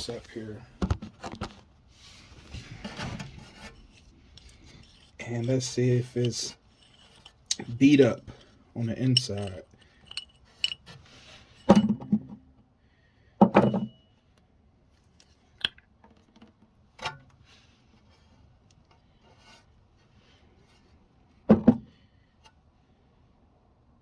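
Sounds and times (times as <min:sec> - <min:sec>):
scraping and rubbing: 0:01.2 - 0:11.7
pump parts knocking and clunking: 0:02.8 - 0:11.0, 0:11.6 - 0:12.4, 0:13.4 - 0:13.9.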